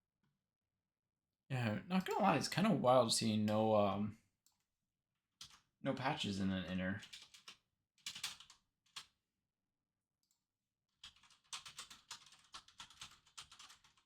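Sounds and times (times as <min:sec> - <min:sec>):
keyboard typing: 0:07.0 - 0:09.1, 0:11.0 - 0:14.0.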